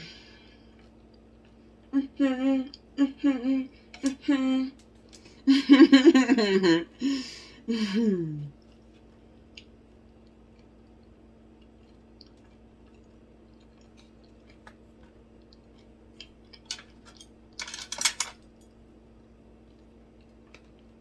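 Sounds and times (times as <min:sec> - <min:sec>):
faint steady hum: 0:00.0 - 0:21.0
crisp crackles of eating: 0:00.2 - 0:01.9, 0:08.5 - 0:21.0.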